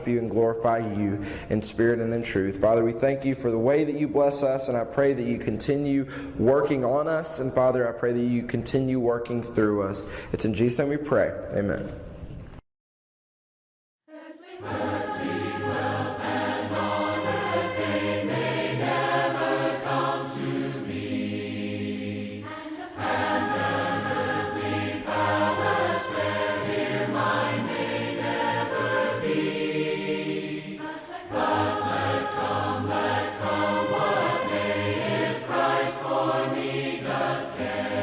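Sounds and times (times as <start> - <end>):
choir singing a hymn: 14.1 - 38.0.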